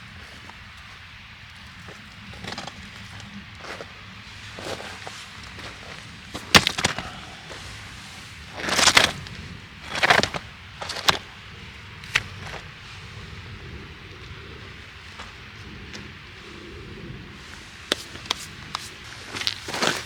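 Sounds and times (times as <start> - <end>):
sharp knocks and cracks: 6.4 - 7.2, 8.6 - 9.2, 9.9 - 11.2.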